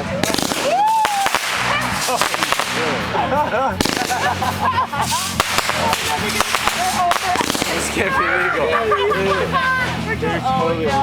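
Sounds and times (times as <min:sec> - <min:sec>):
fireworks whistling: 0:00.0 - 0:08.5
fireworks bangs and crackling: 0:00.0 - 0:08.9.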